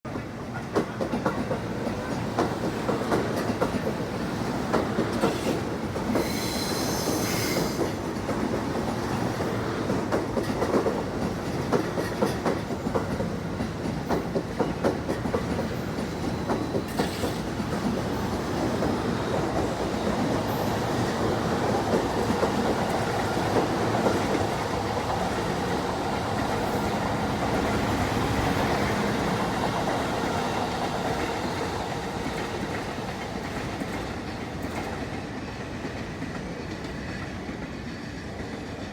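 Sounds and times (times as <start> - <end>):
high wheel squeal: 6.2 - 7.8.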